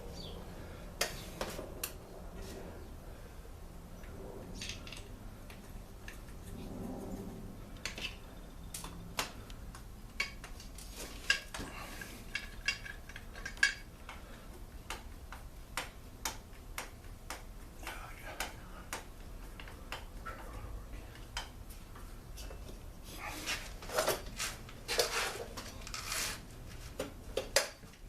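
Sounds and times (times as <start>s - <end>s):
metal parts and tools clinking: 10.2s - 13.9s.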